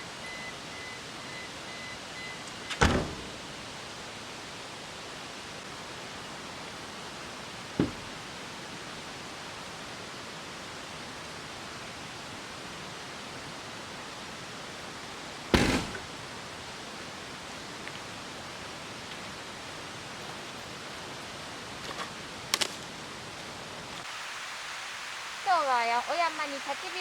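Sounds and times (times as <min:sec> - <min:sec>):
outdoor background hiss: 0:00.0 - 0:27.0
loud short knock: 0:07.8 - 0:08.1, 0:15.5 - 0:16.1.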